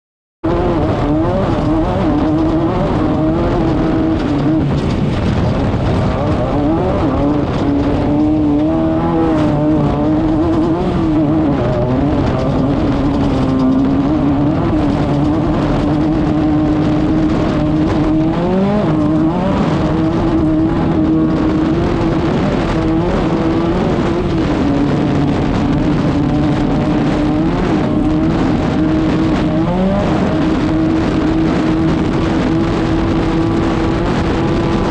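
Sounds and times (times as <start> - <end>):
race car engine at high revs: 0.4 - 34.9.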